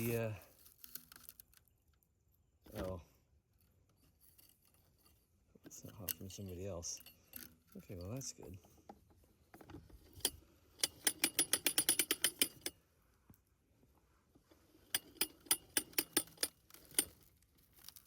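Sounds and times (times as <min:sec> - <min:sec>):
ratchet clicking rapidly: 0:10.8 - 0:12.7, 0:15.0 - 0:17.1.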